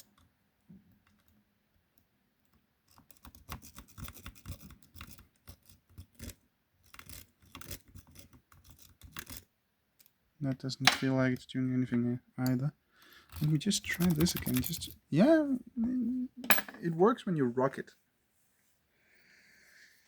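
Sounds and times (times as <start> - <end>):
lock pick clicking and scraping: 2.4 - 10.2, 12.4 - 15.0.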